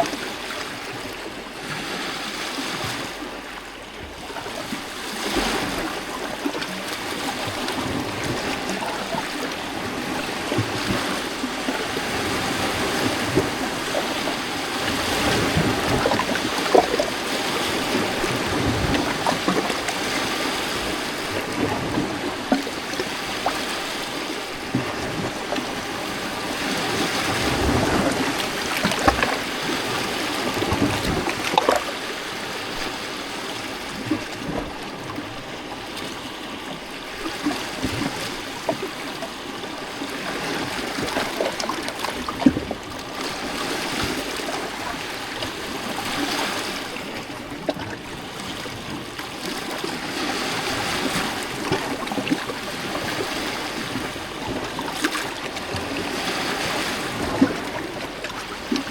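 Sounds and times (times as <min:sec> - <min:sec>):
waves lapping on rocky shore: 0:00.0 - 0:58.9.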